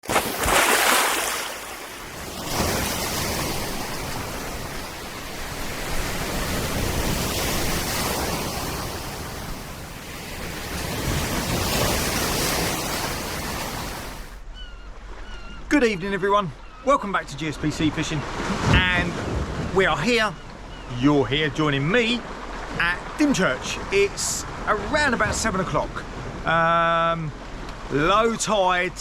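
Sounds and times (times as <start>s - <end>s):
sea waves washing onto shore: 0.0s - 14.4s.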